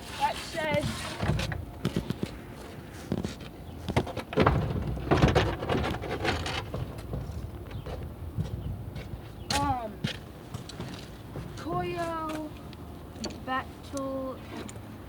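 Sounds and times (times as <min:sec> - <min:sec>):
objects knocking and scraping: 0:00.4 - 0:02.4, 0:03.0 - 0:08.0.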